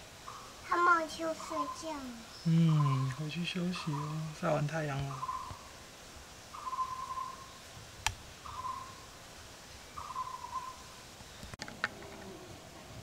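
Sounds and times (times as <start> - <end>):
bird hooting call: 2.6 - 3.2, 5.1 - 5.7, 6.5 - 7.6, 8.4 - 9.1, 10.0 - 10.9.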